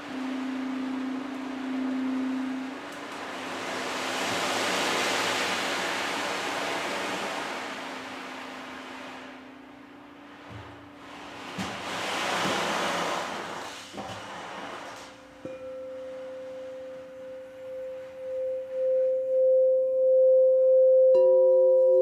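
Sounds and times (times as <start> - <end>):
faint held tone: 0.0 - 4.0, 15.4 - 22.0
lower-pitched bowl struck: 0.0 - 10.7, 15.4 - 22.0
sound bowl ringing: 0.0 - 11.0, 15.3 - 22.0
soft rushing noise: 0.0 - 19.2.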